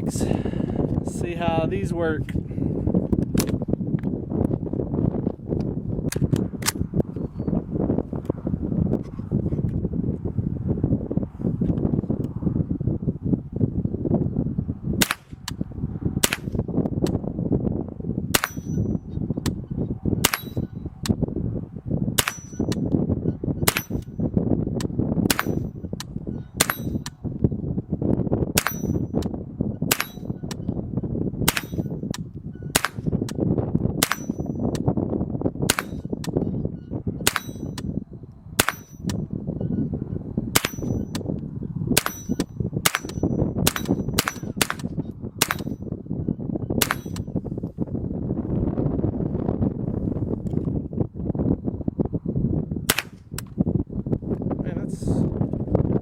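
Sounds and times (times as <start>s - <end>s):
wind rumble on microphone: 0.0s - 56.0s
rifle shots: 16.2s - 16.6s, 22.2s - 22.6s, 25.3s - 25.6s, 31.5s - 31.9s, 32.8s - 33.1s, 35.7s - 36.1s, 37.3s - 37.7s, 38.6s - 39.0s, 42.0s - 45.8s, 46.8s - 47.2s, 52.9s - 53.3s
steel target ringing: 18.4s - 19.0s, 22.2s - 22.8s, 28.6s - 29.2s, 29.9s - 30.5s, 31.5s - 32.0s, 34.0s - 34.7s, 37.3s - 37.9s, 40.6s - 41.2s, 42.0s - 44.8s, 46.8s - 47.2s.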